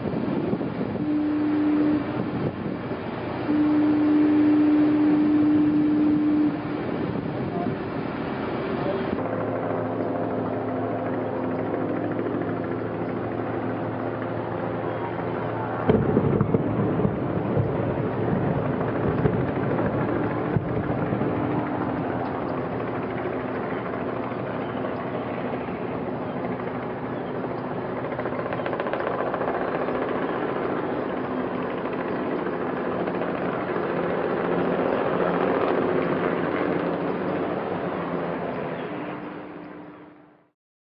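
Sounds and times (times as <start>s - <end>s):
engine drone: 0.0s - 40.5s
crackling string of detonations: 15.8s - 23.0s.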